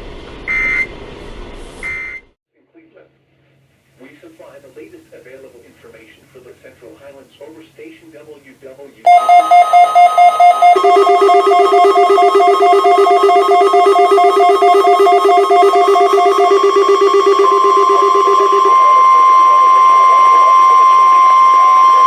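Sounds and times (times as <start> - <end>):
alert alarm beeping rapidly: 9.1 - 19.1
steady high warning tone: 9.1 - 22.0.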